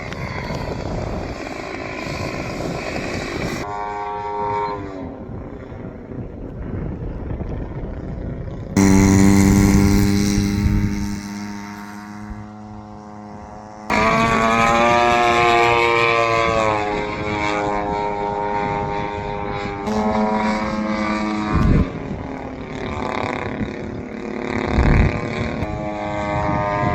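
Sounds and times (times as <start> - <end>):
model plane engine buzzing: 0.0 - 4.3, 8.8 - 26.9.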